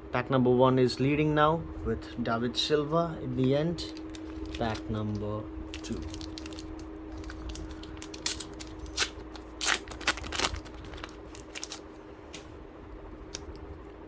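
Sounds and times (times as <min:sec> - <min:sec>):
cards being handled: 0:03.4 - 0:12.5
foil card pack tearing: 0:03.8 - 0:12.4.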